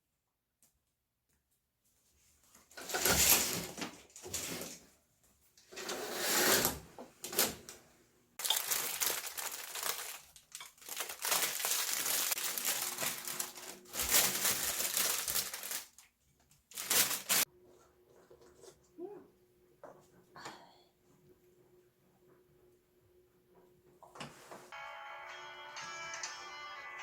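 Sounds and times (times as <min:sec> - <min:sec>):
rustling and crinkling: 0:08.4 - 0:19.0.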